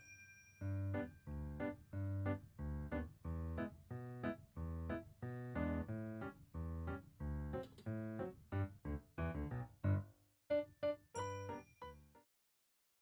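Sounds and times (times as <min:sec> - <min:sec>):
light keyboard tune with bass beat: 0:00.7 - 0:11.6.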